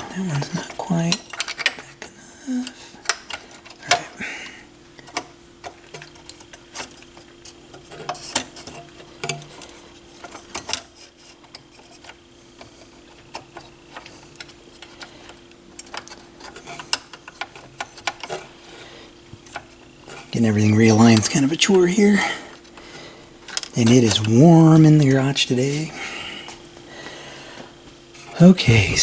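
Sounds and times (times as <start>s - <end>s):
turntable parts clicking and tapping: 0.0s - 21.8s.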